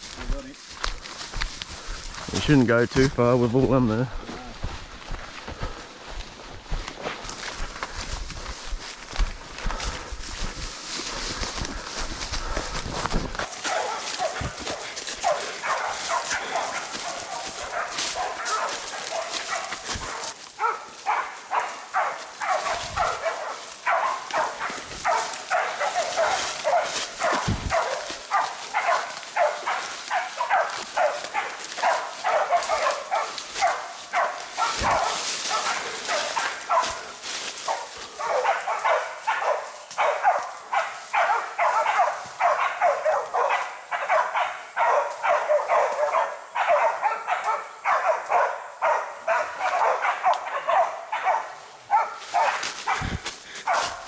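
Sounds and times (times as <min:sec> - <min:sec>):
dogs barking: 0:13.4 - 0:54.0.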